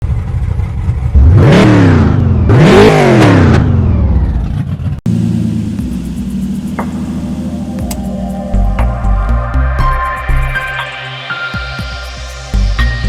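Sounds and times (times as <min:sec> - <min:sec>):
car engine revving: 0:01.1 - 0:11.2
steady low tone: 0:05.1 - 0:13.0.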